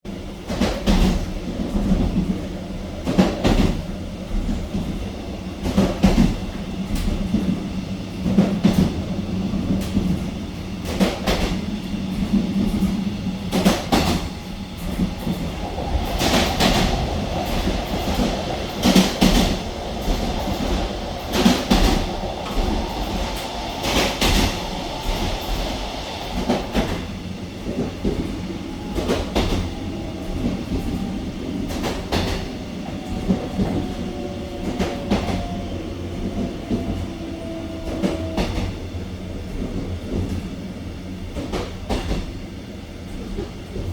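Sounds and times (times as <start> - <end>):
train wheels clacking over rail joints: 12.2 - 25.7, 27.7 - 35.6.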